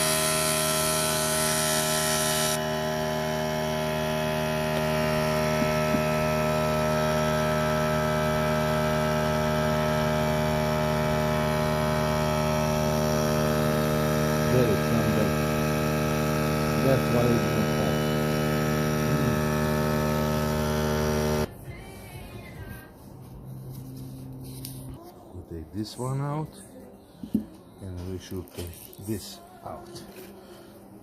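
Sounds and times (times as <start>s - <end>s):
electric machine hum: 0.0s - 22.0s.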